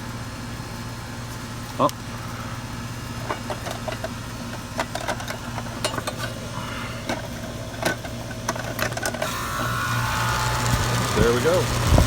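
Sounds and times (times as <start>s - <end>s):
air conditioner unit humming: 0.0s - 12.0s
metal parts clicking and knocking: 3.2s - 6.4s, 7.1s - 9.3s.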